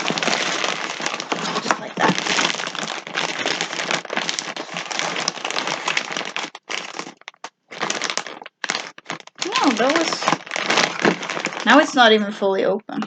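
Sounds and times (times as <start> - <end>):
plastic packaging crinkling: 0.0 - 12.3.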